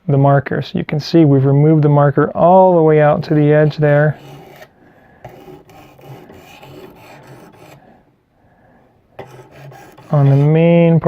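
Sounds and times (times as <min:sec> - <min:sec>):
sharpening stone rasping on knife: 0:04.1 - 0:04.7, 0:05.3 - 0:07.8, 0:09.2 - 0:10.5.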